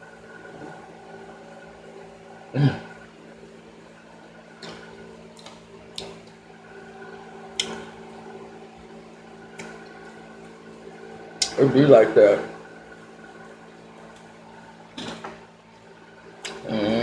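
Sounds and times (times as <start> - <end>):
steady electrical hum: 0.0 - 17.0
mouth sound: 16.5 - 17.0.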